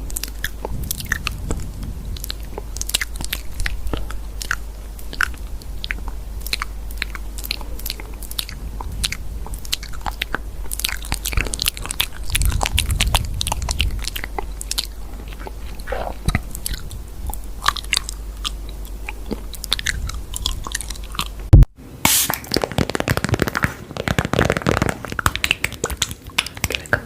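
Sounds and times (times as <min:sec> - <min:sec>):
crunching and chewing: 0:00.0 - 0:21.5, 0:22.3 - 0:27.0
loud pop: 0:21.6 - 0:23.2.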